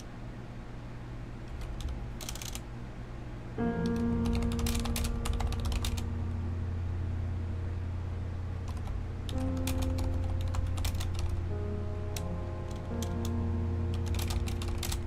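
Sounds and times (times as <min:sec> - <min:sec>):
mechanical keyboard typing: 0:01.5 - 0:02.7, 0:03.8 - 0:06.1, 0:08.6 - 0:15.0
soft background music: 0:03.5 - 0:15.0.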